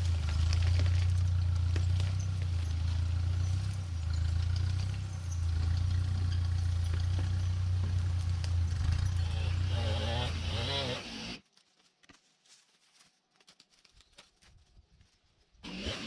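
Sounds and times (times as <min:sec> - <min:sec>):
engine running steadily: 0:00.0 - 0:10.7.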